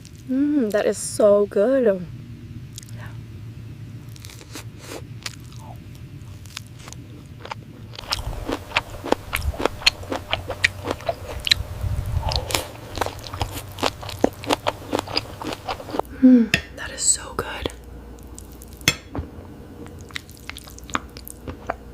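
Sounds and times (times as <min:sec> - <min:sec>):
woman chewing and crunching: 0:04.1 - 0:16.1, 0:19.8 - 0:21.9.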